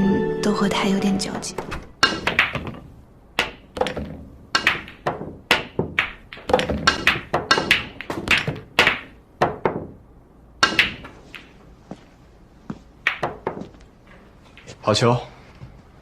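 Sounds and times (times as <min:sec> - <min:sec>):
billiard balls clacking: 0:01.6 - 0:10.0, 0:10.6 - 0:12.0, 0:13.0 - 0:14.8.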